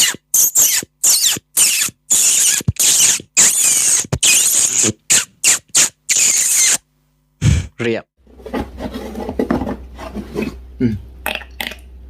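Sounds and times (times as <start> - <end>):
person making squeaks with mouth: 0.0 - 6.8.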